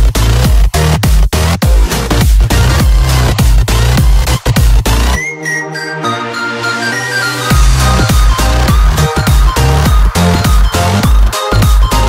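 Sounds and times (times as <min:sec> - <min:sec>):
held synth notes: 0:05.2 - 0:12.0
high synth melody: 0:05.2 - 0:12.0.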